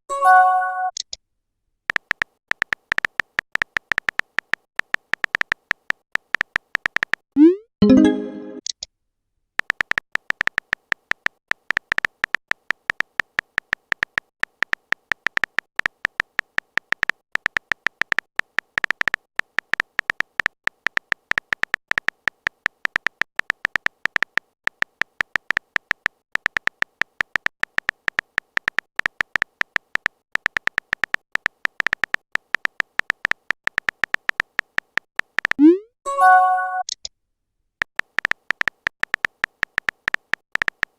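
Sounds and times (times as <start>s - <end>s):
keyboard typing clicks: 1.9s - 8.9s, 9.6s - 35.8s, 37.8s - 40.9s
message alert tone: 7.4s - 8.6s, 35.6s - 37.0s.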